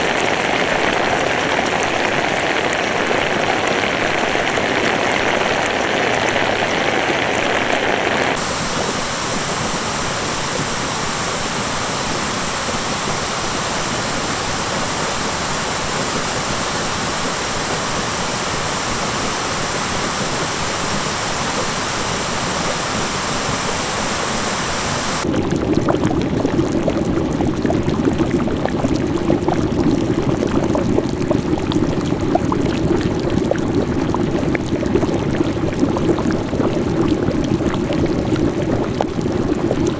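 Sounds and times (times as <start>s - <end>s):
hot water bubbling and gurgling: 0.0s - 24.0s, 25.2s - 39.9s
spring water rushing: 8.3s - 25.2s.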